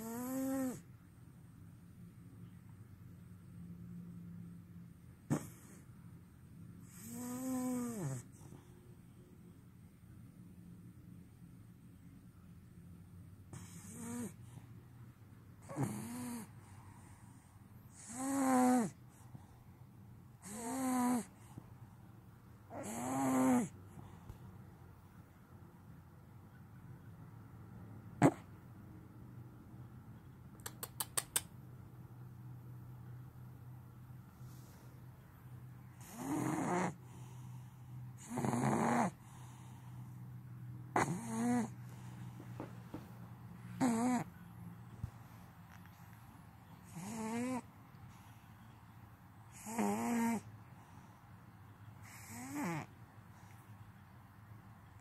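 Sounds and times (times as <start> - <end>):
loud wavering snores: 0.0 - 0.9, 5.3 - 5.8, 6.8 - 8.5, 13.5 - 14.5, 15.6 - 17.2, 17.9 - 19.0, 20.4 - 21.4, 22.7 - 23.8, 28.2 - 28.5, 35.9 - 37.6, 38.2 - 39.8, 40.9 - 42.1, 43.8 - 44.3, 46.8 - 47.7, 49.5 - 50.5, 52.0 - 53.0
faint low hum: 0.0 - 55.0
person snoring: 15.6 - 16.5, 18.0 - 19.0, 20.4 - 21.3, 22.7 - 23.8, 43.8 - 44.3.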